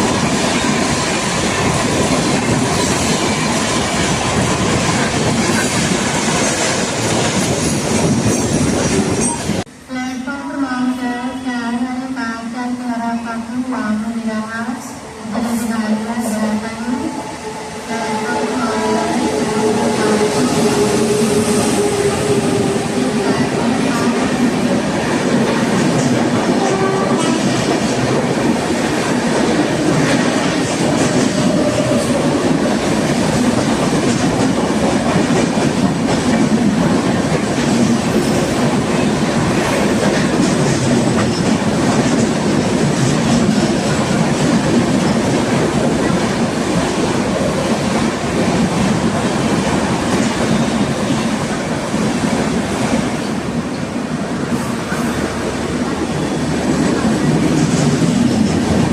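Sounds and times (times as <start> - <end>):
train passing at speed: 0.0 - 58.9.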